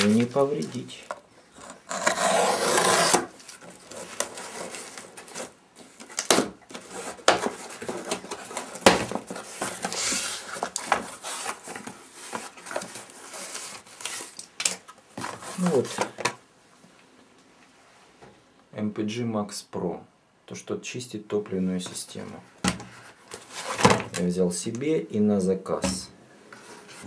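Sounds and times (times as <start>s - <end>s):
packaging rustling and scraping: 0.0s - 16.4s, 22.8s - 24.2s
packaging ripping: 1.9s - 11.6s.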